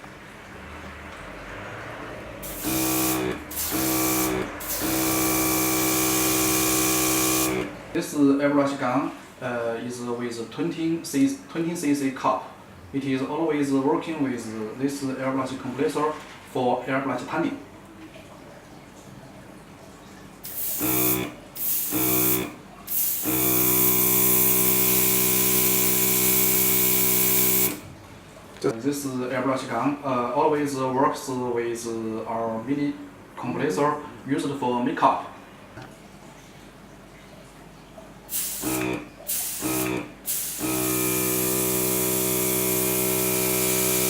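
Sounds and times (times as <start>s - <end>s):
airbrush spraying air hiss: 2.4s - 7.5s, 20.5s - 27.8s, 38.3s - 40.8s
compressor motor humming: 2.4s - 8.0s, 20.4s - 27.9s, 38.3s - 44.0s.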